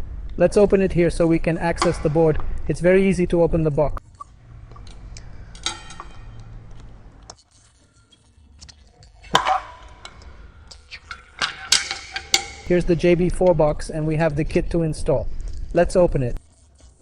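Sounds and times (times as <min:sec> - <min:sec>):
loud knock and clink: 0:05.6 - 0:06.4.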